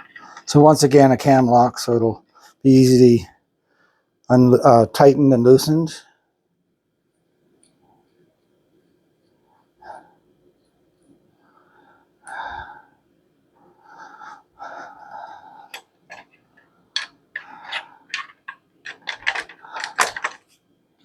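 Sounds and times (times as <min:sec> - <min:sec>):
rustling scrapes of parts: 0:00.0 - 0:00.6, 0:15.6 - 0:20.6
sharp clicks and knocks: 0:15.7 - 0:20.5.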